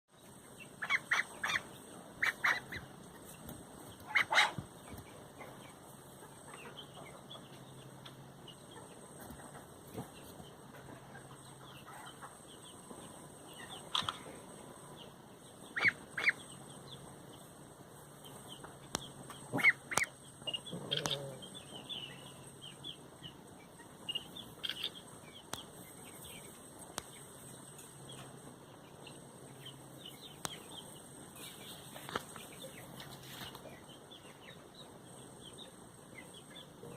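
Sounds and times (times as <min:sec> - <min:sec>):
ducklings peeping: 0:00.2 - 0:36.9
sharp duckling calls: 0:00.7 - 0:03.0, 0:04.0 - 0:04.6, 0:15.7 - 0:16.6, 0:19.4 - 0:21.3, 0:24.1 - 0:25.1.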